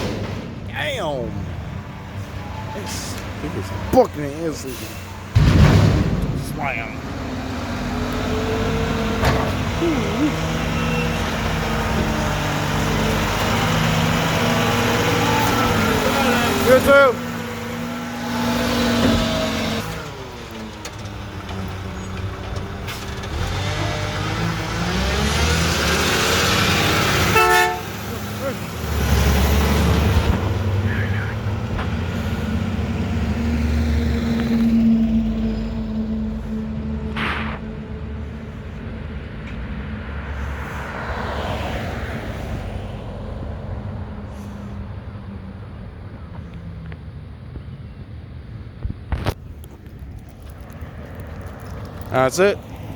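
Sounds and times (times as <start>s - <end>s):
garbage truck engine accelerating: 0.0s - 40.3s.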